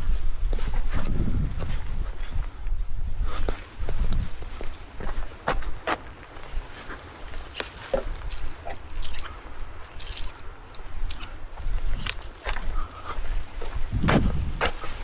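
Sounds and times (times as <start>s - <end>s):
wind buffeting microphone: 0.0s - 15.0s
footsteps on wet ground: 3.2s - 15.0s.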